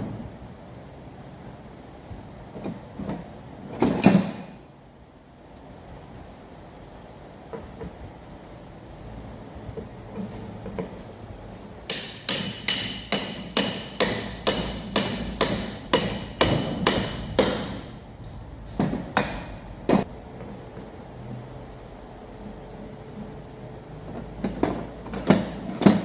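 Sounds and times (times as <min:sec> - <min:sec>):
hammer striking metal: 0:11.9 - 0:17.9.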